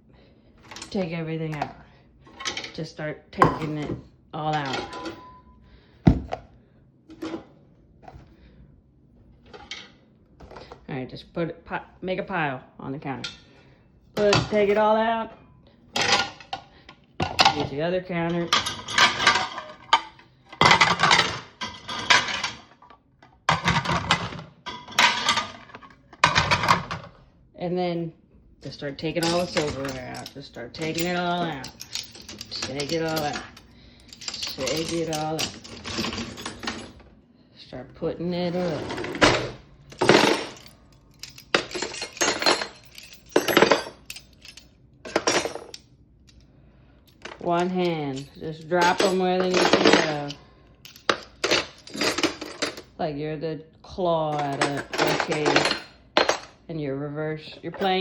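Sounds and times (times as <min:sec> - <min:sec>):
dishes clattering and clinking: 0:04.6 - 0:05.4, 0:18.5 - 0:22.7, 0:23.5 - 0:27.1.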